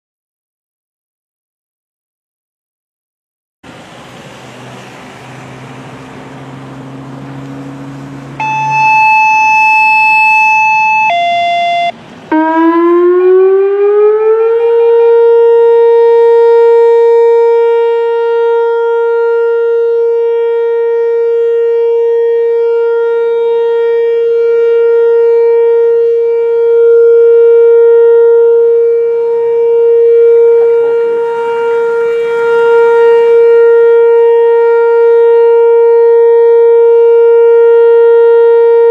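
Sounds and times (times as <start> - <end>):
loud gliding siren-like tone: 3.9 - 38.9
short steady tones: 7.1 - 12.5.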